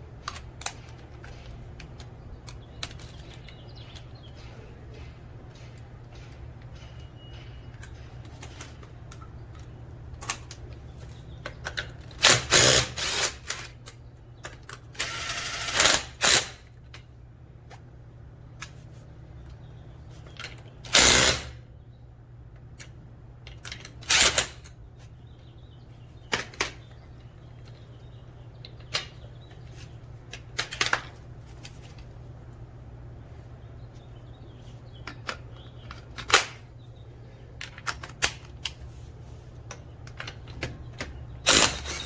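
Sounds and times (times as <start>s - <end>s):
steady low hum: 0.0s - 42.0s
impact wrench bursts: 12.2s - 13.6s, 15.0s - 16.6s, 20.9s - 21.6s, 41.4s - 42.0s.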